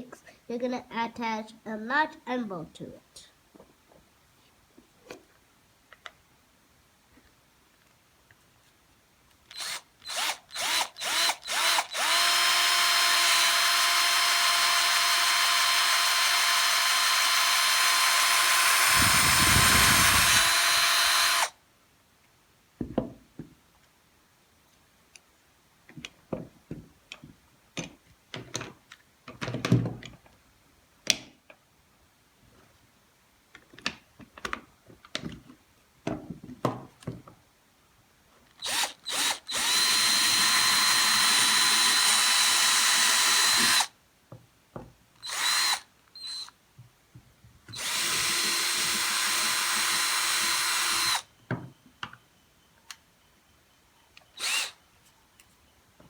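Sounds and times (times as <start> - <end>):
electric drill: 9.5 - 21.6, 38.6 - 43.9, 45.2 - 46.5, 47.7 - 51.3, 54.4 - 54.8.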